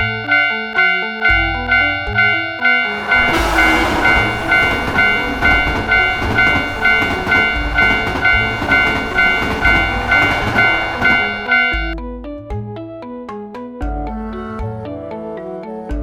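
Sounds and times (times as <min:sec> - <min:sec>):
railroad crossing bell ringing: 0:00.0 - 0:12.0
train rumbling past: 0:01.3 - 0:12.0.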